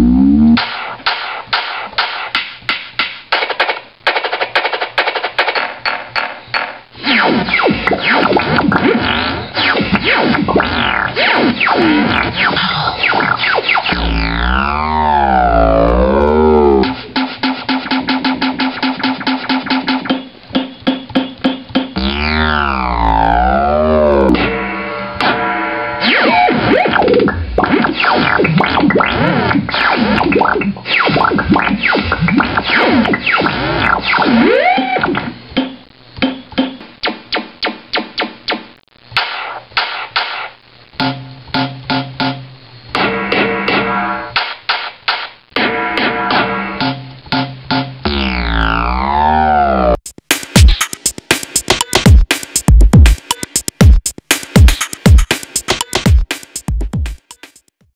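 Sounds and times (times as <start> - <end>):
sliding pitch sweep effects: 0.0 - 0.6, 7.1 - 20.1, 22.0 - 27.0, 48.0 - 50.0
swooping synthesizer glides: 0.0 - 0.6, 7.1 - 18.7, 22.0 - 26.6, 48.0 - 50.0
short electronic noise bursts: 7.0 - 25.2.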